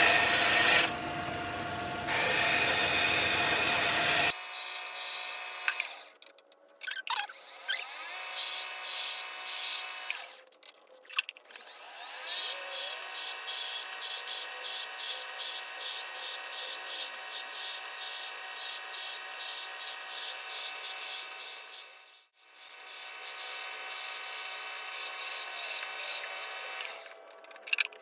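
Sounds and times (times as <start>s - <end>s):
lathe tool cutting acrylic: 0.0s - 6.1s, 11.6s - 27.5s.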